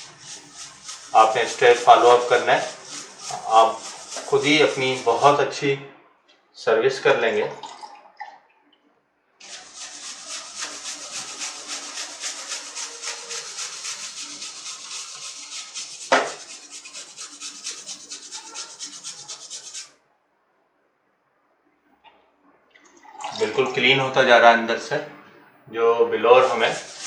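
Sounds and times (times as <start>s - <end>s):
brush scrubbing wet fan: 0.0s - 5.6s, 9.4s - 19.9s, 26.3s - 27.0s.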